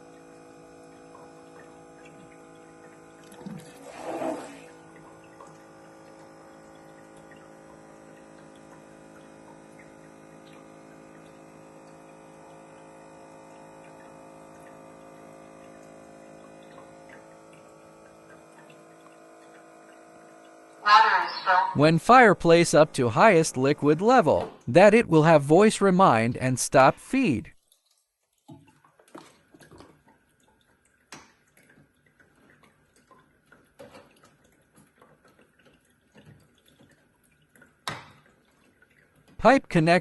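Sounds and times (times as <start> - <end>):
feed pump humming: 0.0 - 27.4.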